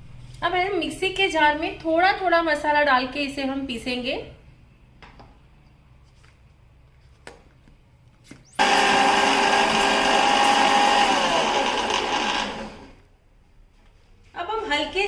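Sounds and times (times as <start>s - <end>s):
mixer grinder motor whine: 8.6s - 13.1s.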